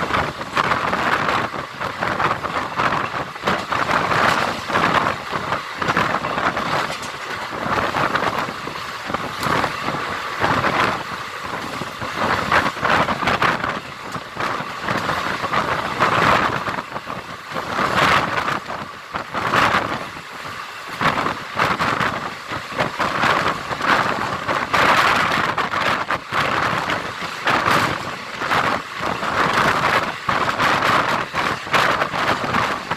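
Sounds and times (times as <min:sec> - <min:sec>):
rush of wind: 0:00.0 - 0:32.9
train wheels clattering on rails: 0:00.0 - 0:32.9.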